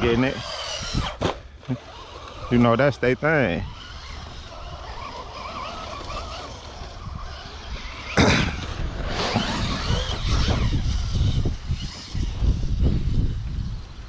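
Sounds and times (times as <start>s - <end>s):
electric motor whining: 0.0s - 13.4s
toy truck accelerating: 0.0s - 13.4s
tyres throwing dirt: 7.3s - 10.5s.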